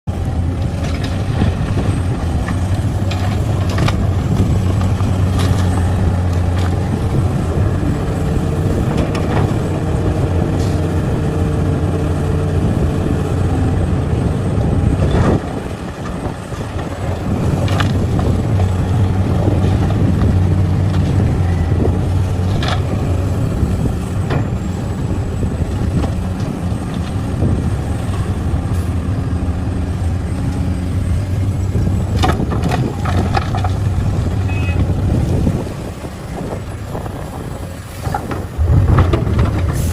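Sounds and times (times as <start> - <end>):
heavy diesel machinery running: 0.0 - 39.9
knocks and clanks: 31.8 - 35.0, 38.0 - 39.9.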